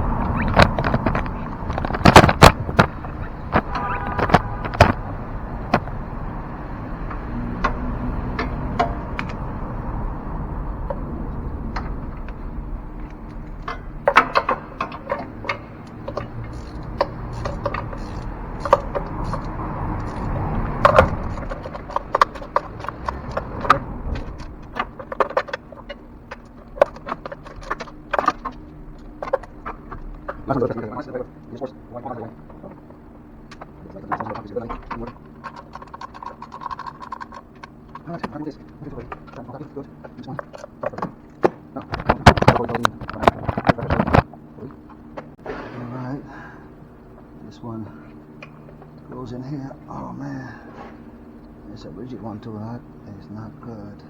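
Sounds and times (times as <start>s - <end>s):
low background hum: 0.0s - 54.0s
tools clicking and knocking: 0.4s - 5.1s, 7.0s - 9.4s, 13.0s - 30.5s, 33.5s - 44.3s.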